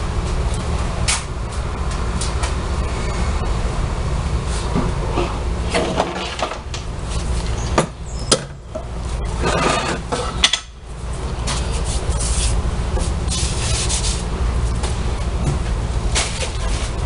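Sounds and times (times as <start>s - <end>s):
steady low hum: 0.0s - 17.0s
metal parts scraping: 9.3s - 10.6s.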